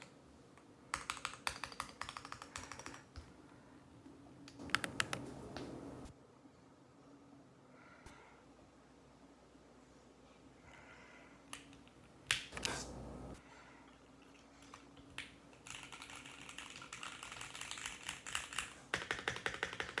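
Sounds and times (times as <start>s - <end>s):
mechanical keyboard typing: 0.9s - 3.2s, 4.6s - 5.2s, 15.2s - 20.0s.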